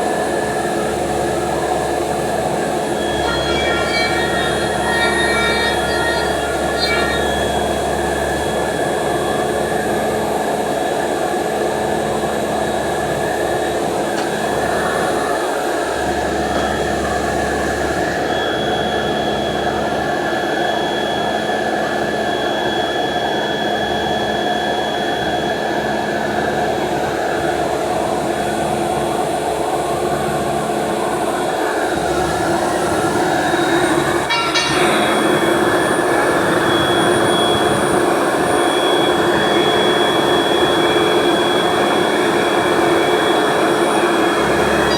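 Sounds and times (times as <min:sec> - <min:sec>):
heavy machine droning: 0:00.0 - 0:11.0, 0:31.8 - 0:44.9
machine whining tones: 0:00.2 - 0:25.6, 0:31.8 - 0:44.9.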